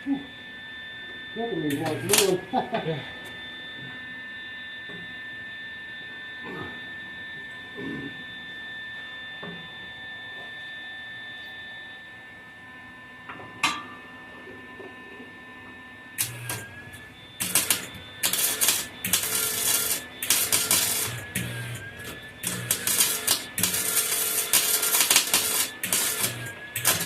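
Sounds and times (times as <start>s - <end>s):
electrical hum: 0.0s - 9.1s, 9.7s - 27.0s
welding crackling bursts: 1.7s - 2.4s, 16.2s - 16.7s, 17.4s - 27.0s.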